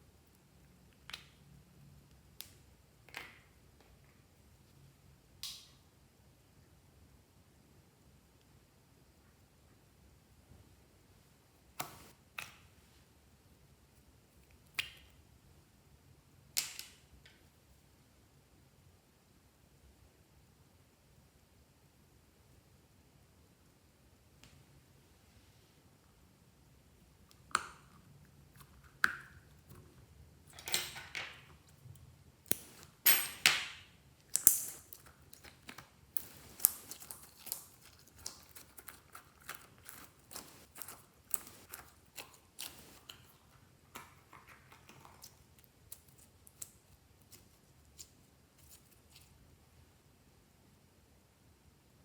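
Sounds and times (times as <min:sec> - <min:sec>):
slime crackling: 0:34.3 - 0:43.4.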